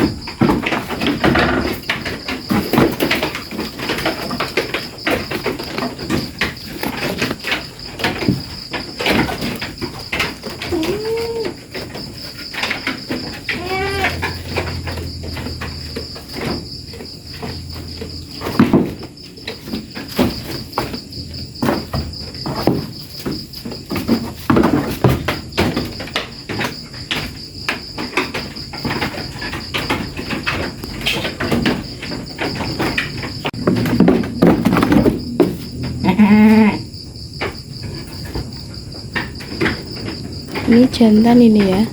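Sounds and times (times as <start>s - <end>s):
high insect trill: 0.0s - 41.9s
goat kid bleats: 10.7s - 11.5s, 13.5s - 14.3s, 36.0s - 36.9s.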